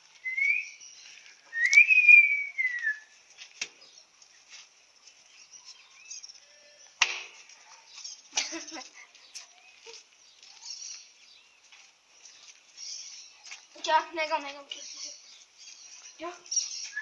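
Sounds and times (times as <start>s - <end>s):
person whistling: 0.3s - 0.7s, 1.5s - 3.1s.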